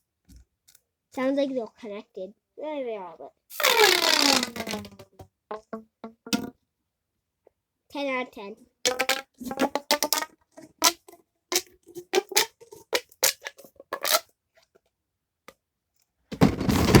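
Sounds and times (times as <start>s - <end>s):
fidget toy popping and clicking: 3.5s - 5.2s, 6.2s - 6.5s, 8.9s - 14.2s.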